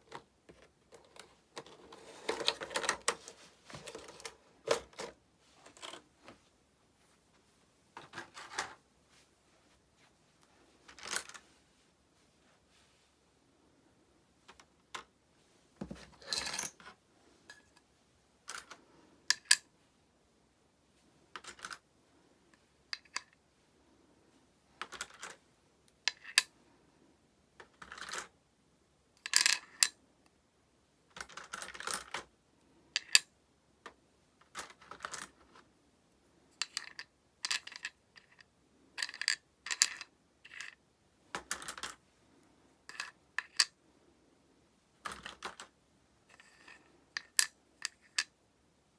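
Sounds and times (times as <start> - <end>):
plastic toy pieces clattering: 39.0 - 40.8, 42.9 - 43.7.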